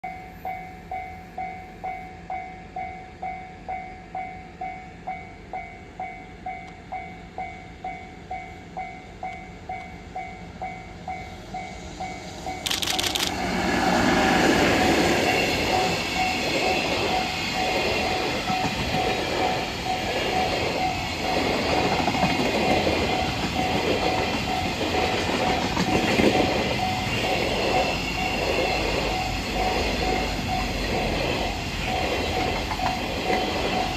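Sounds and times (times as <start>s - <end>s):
freight train passing: 0.0s - 33.9s.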